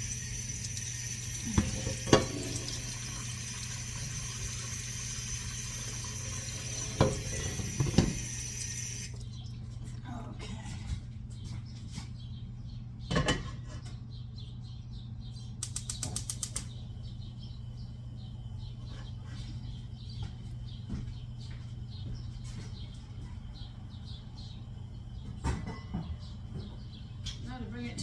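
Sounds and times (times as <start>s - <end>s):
sharp clicks: 15.6s - 16.8s.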